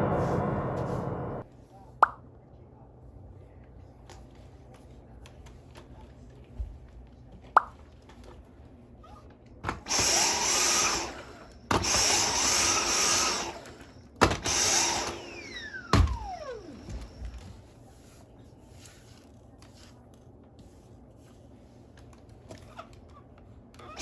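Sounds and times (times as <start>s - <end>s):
vacuum motor whining: 9.7s - 17.5s.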